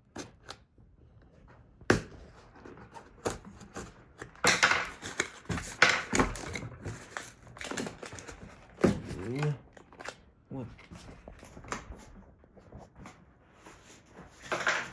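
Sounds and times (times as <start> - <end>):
cardboard rustling: 4.9 - 14.9.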